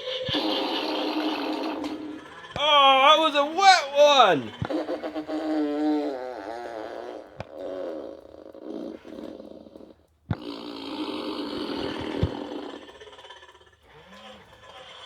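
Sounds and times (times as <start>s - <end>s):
buzzing cartoon fart effects: 4.7s - 12.8s.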